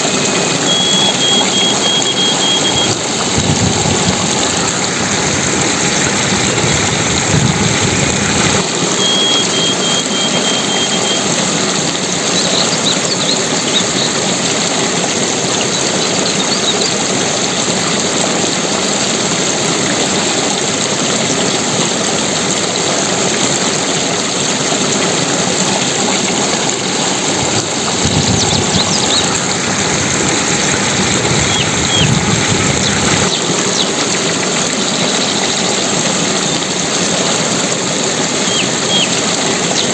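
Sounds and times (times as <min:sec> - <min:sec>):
water rushing: 0:00.0 - 0:39.9
faint high chirps: 0:00.6 - 0:02.9, 0:09.0 - 0:11.3.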